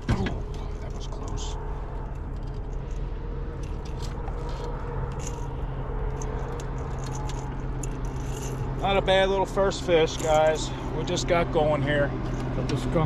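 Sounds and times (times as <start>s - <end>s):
low steady hum: 0.0s - 13.0s
fishing gear scrapes and clicks: 1.0s - 8.8s.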